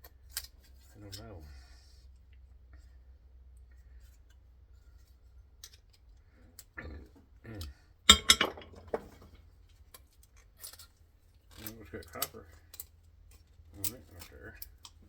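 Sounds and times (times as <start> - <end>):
metal pieces and tools clinking: 8.1 - 9.4.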